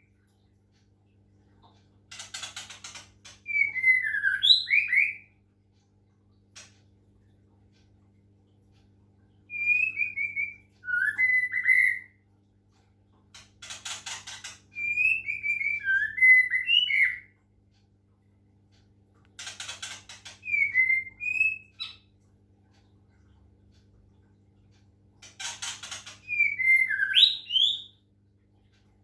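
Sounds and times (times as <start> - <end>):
harsh bird rattling: 2.1 - 3.6, 13.3 - 14.7, 19.4 - 20.7, 25.2 - 27.0
bird singing whistled phrases: 3.5 - 5.3, 9.5 - 12.2, 14.8 - 17.3, 20.4 - 22.1, 26.2 - 28.0.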